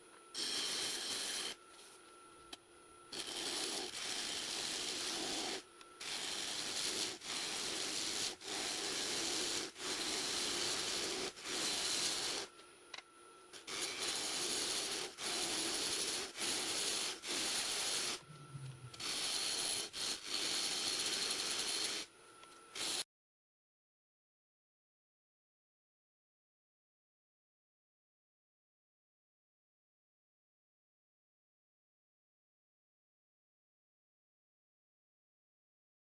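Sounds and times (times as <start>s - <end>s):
lathe gouge scraping bowl blank: 3.2s - 12.5s, 13.7s - 18.2s.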